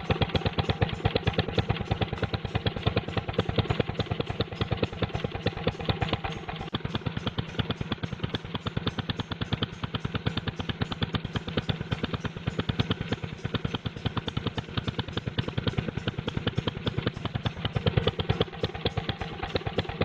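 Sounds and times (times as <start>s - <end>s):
old engine sputtering: 0.0s - 20.0s.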